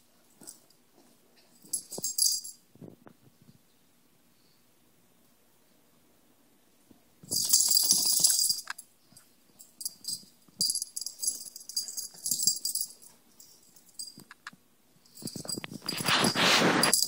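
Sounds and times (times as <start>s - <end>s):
dog collar tags jingling: 9.8s - 14.3s.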